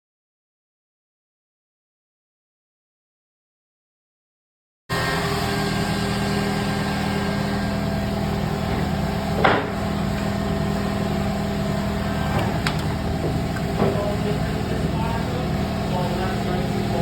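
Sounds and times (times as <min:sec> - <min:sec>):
machine humming: 0:04.9 - 0:17.0.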